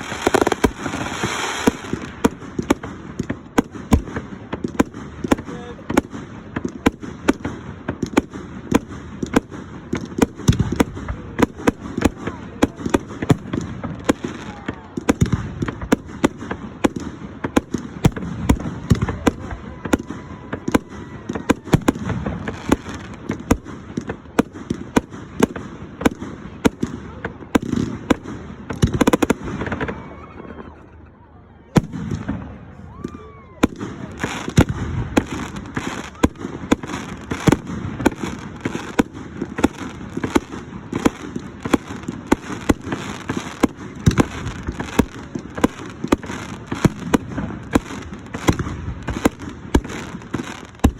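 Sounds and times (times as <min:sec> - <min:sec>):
rockets whistling: 0:00.0 - 0:02.5
fireworks bangs and crackles: 0:00.0 - 0:50.9.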